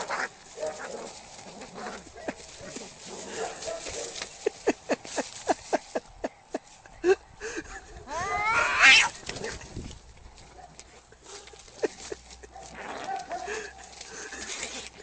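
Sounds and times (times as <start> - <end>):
cat yowling: 8.1 - 9.1.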